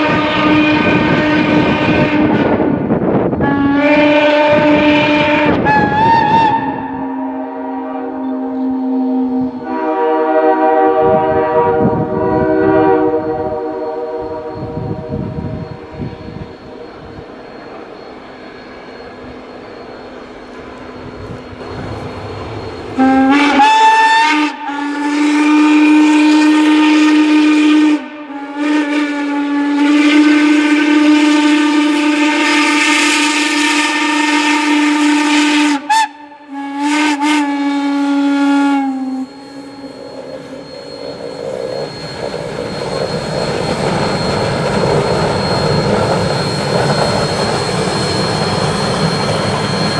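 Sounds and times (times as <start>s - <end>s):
steam locomotive whistle blasts: 0.0s - 49.9s
locomotive running noise: 8.0s - 27.7s, 37.5s - 49.9s.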